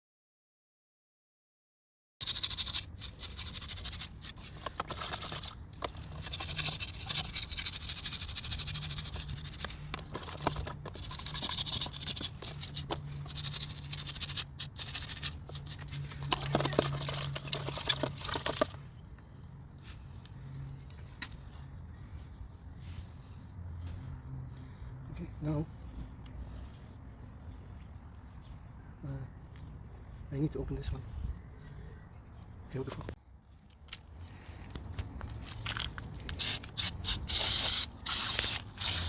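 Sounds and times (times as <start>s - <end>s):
scrubbing and scraping on metal: 2.2s - 18.8s.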